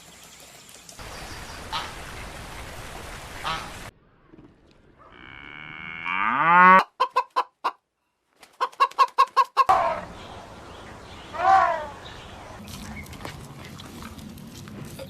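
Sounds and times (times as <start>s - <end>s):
cow mooing: 5.0s - 6.8s
hen clucking: 6.8s - 7.8s, 8.5s - 12.6s.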